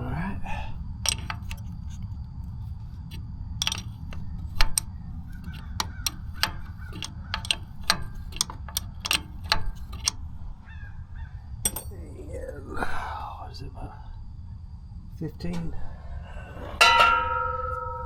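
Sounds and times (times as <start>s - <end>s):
steady low rumble: 0.0s - 18.0s
hand tools clinking: 1.0s - 1.9s, 3.6s - 10.3s, 11.6s - 12.1s.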